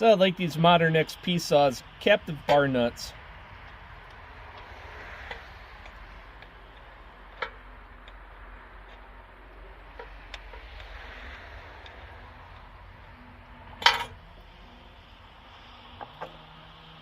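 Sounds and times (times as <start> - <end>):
light metallic clicks and taps: 3.6 - 11.0.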